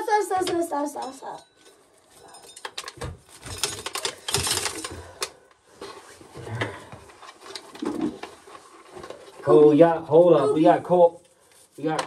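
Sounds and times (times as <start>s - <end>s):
corn sheller clicking and rattling: 2.3s - 5.4s.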